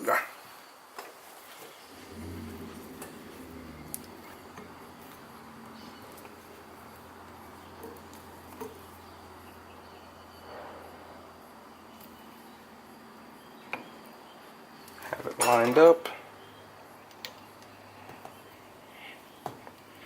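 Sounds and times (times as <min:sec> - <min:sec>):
faint low buzz: 0:01.9 - 0:13.5.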